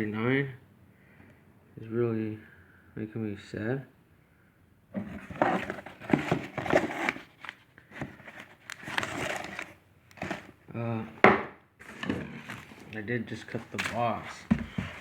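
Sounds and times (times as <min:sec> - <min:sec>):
packaging crinkling and scraping: 0:05.0 - 0:10.6, 0:11.8 - 0:15.0.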